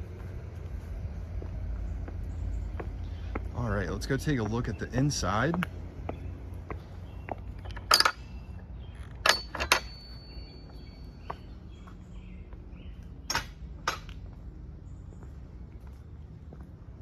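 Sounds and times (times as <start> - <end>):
low background rumble: 0.0 - 17.0
footsteps on hard surface: 0.1 - 3.6.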